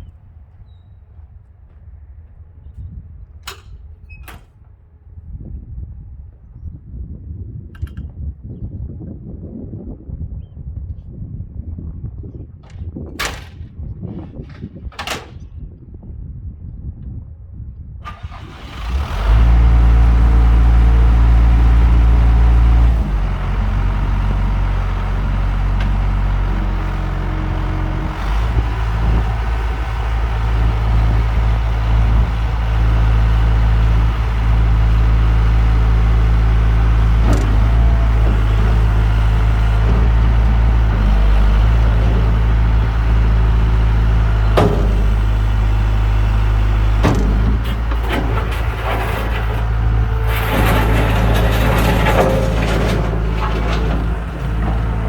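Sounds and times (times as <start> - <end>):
loader diesel engine running: 18.1 - 55.0.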